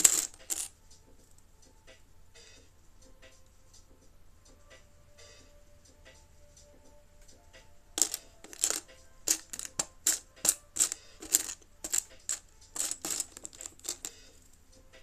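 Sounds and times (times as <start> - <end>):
plastic pieces clattering: 0.0 - 0.7, 8.0 - 14.1.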